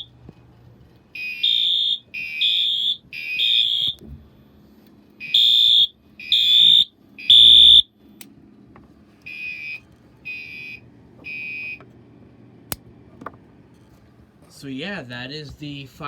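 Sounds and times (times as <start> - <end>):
fire alarm horn blasts: 1.1 - 4.0, 5.2 - 7.9, 9.3 - 11.8.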